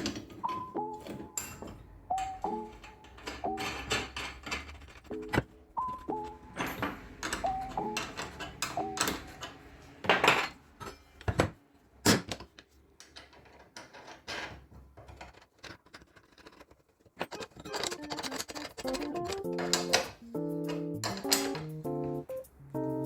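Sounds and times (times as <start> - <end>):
background music: 0.0 - 4.2, 17.6 - 23.0
small hard objects knocking: 13.8 - 20.2.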